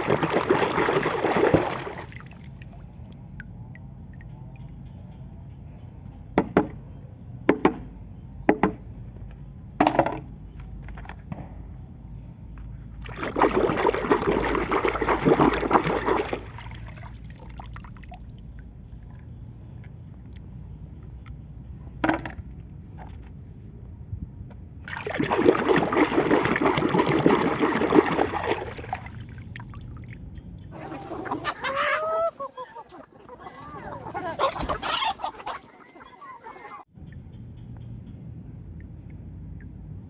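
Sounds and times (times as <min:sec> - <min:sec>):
water trickling and splashing: 0:00.0 - 0:04.8, 0:13.0 - 0:19.3, 0:24.8 - 0:32.3.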